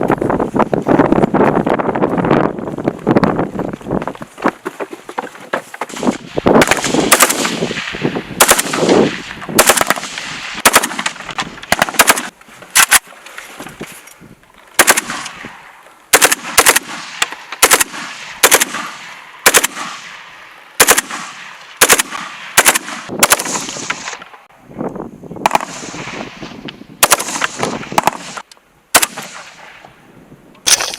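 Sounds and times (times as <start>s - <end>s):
rifle shots with echo: 5.9s - 13.1s, 14.8s - 24.2s, 25.4s - 26.4s, 27.0s - 29.8s.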